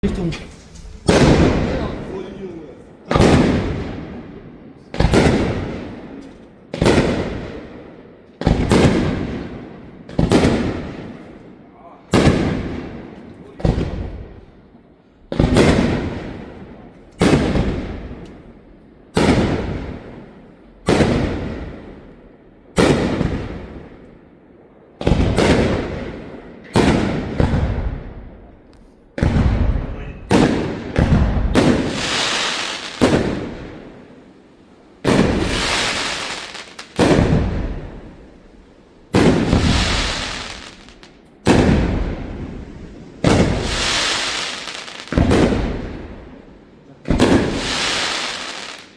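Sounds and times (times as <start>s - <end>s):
fireworks bursting: 0.0s - 24.2s, 24.9s - 48.9s
hissing crackle: 31.8s - 33.1s, 35.1s - 37.0s, 39.3s - 41.1s, 42.6s - 45.3s, 47.4s - 48.9s.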